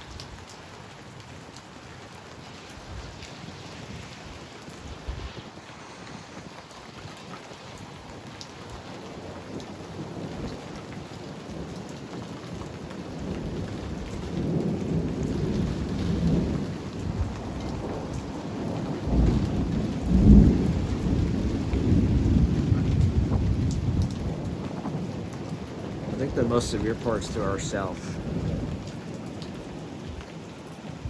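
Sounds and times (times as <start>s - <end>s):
steady rain: 0.0s - 31.0s
low rumbles of thunder: 8.8s - 30.6s.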